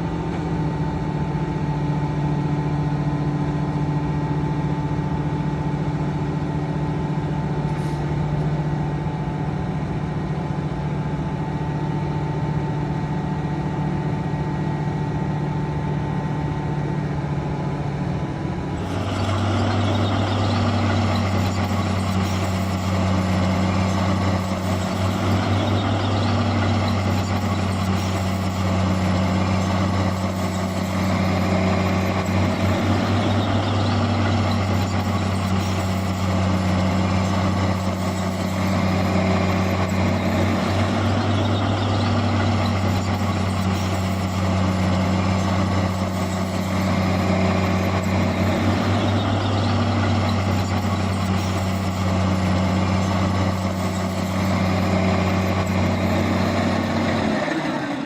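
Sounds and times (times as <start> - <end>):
harsh engine drone: 0.0 - 58.0
heavy diesel engine running: 0.0 - 58.0.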